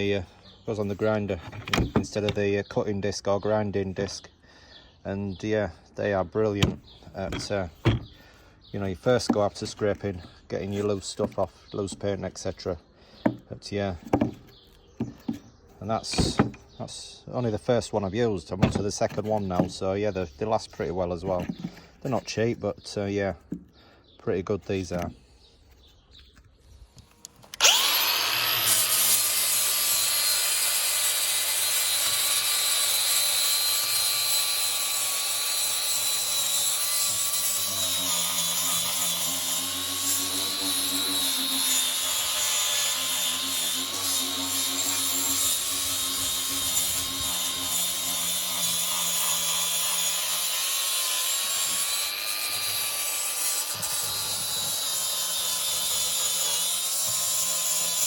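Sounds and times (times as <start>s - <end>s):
angle grinder whining: 27.4s - 58.0s.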